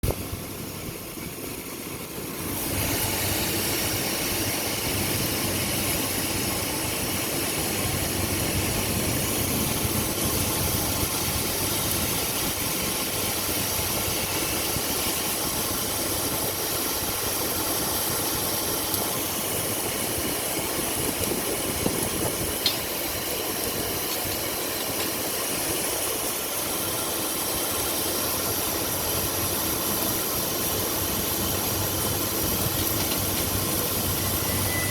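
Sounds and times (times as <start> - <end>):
welding equipment hissing: 2.2 - 17.7, 28.9 - 34.9.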